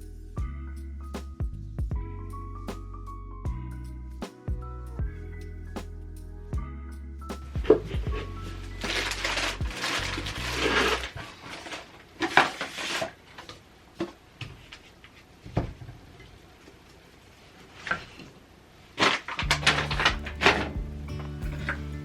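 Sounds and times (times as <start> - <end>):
rustling: 7.4 - 18.4.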